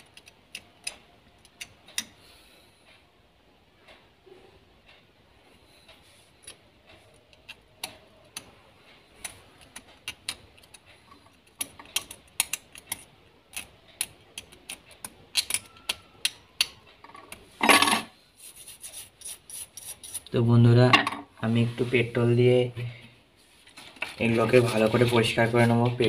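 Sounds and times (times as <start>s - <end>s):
razor blade scraping metal: 18.4s - 20.4s.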